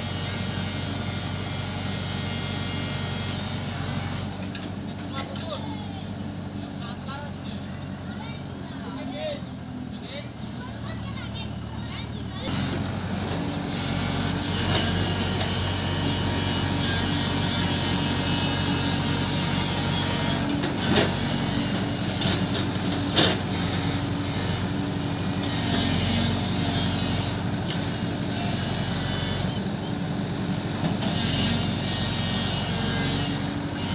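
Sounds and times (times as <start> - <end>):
diesel engine running: 0.0 - 33.9.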